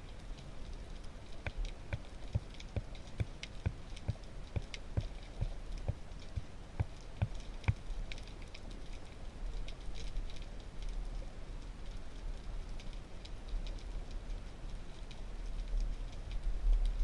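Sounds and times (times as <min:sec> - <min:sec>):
regular sharp clicks: 0:00.4 - 0:08.7.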